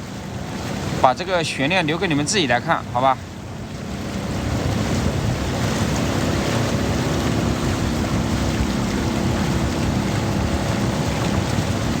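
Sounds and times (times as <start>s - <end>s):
outboard motor running: 0.0s - 12.0s
rushing water: 0.0s - 12.0s
wind noise on microphone: 3.2s - 12.0s.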